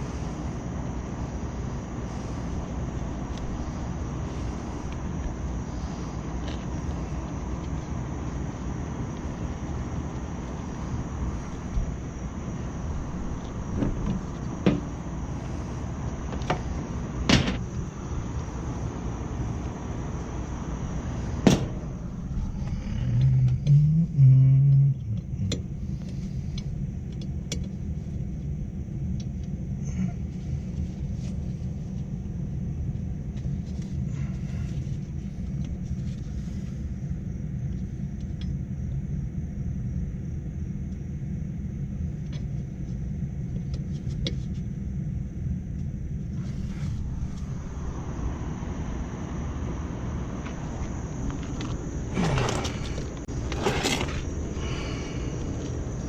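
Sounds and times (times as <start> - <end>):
low hum: 0.0 - 43.6, 44.7 - 56.0
hvac machinery rumbling: 0.0 - 56.0
tools clanking on metal: 51.4 - 54.3.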